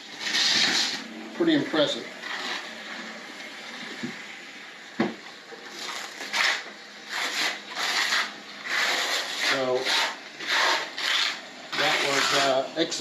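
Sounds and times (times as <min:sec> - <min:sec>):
rubbing or scraping strokes: 0:00.1 - 0:01.1, 0:05.7 - 0:12.6.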